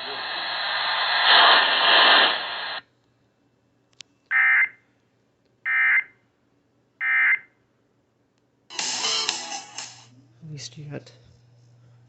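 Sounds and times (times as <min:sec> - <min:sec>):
radio hiss: 0:00.0 - 0:02.9.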